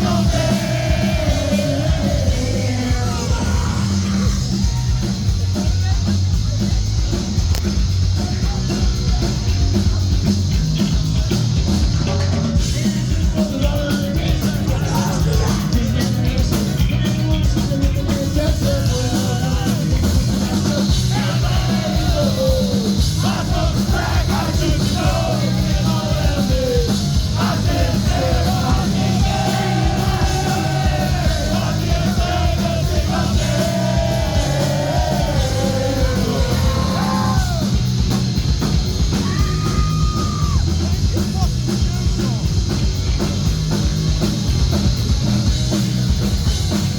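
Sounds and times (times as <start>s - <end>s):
vocalist singing and yelling: 0.0s - 5.6s, 12.6s - 37.9s
punk rock band playing: 0.0s - 46.9s.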